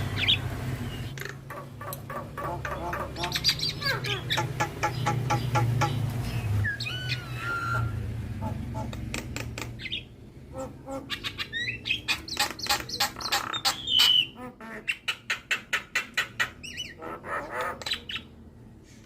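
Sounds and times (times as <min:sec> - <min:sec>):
bird singing clicks and whistles: 0:12.0 - 0:14.1.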